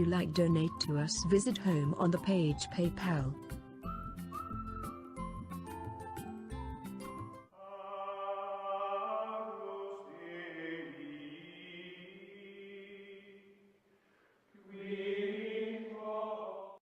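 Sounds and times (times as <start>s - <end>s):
chant-like voices holding long notes: 7.6s - 13.5s, 14.6s - 16.8s.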